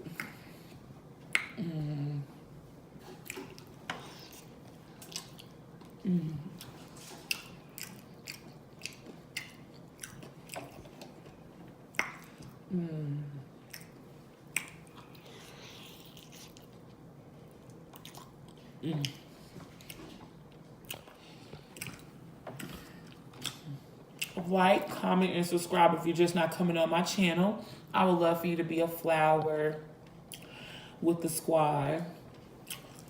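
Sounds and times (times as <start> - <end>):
wet mouth clicks: 1.3 - 1.7, 13.7 - 15.2
person crunching and chewing: 3.1 - 6.0, 6.6 - 12.5, 13.7 - 17.0, 17.6 - 24.4, 32.6 - 33.0
throaty voice sounds: 6.0 - 6.6.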